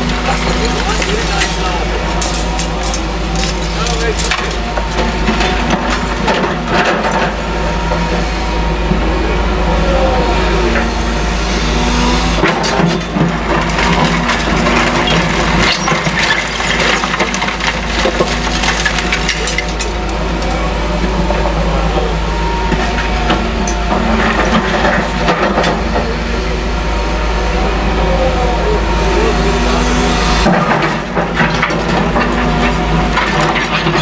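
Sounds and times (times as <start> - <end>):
debris cracking and crunching: 0.0 - 7.4, 12.4 - 21.6, 30.4 - 34.0
excavator diesel engine: 0.0 - 34.0.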